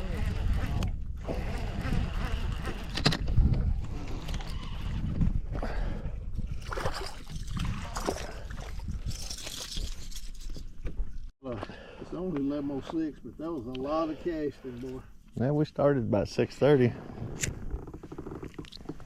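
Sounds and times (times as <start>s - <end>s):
water sloshing around boat: 6.4s - 9.8s.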